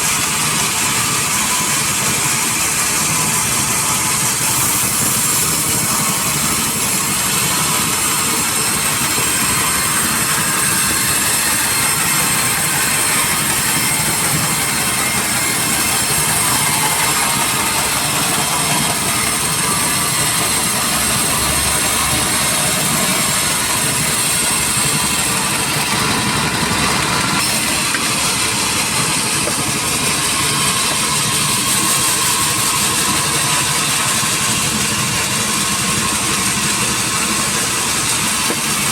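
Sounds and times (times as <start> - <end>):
sawmill machinery running: 0.0 - 38.9.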